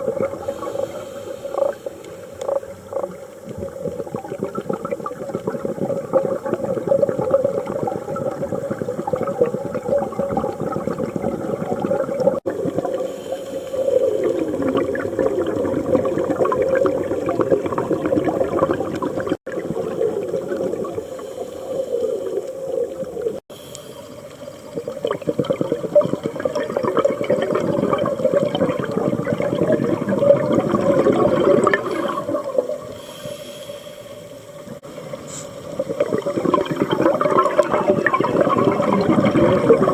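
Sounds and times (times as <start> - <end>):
bubbling exhaled air: 0.0 - 23.5, 24.2 - 33.9, 34.7 - 39.9
regulator inhale hiss: 0.4 - 2.7, 12.9 - 14.5, 20.9 - 22.9, 23.5 - 24.4, 31.9 - 35.7.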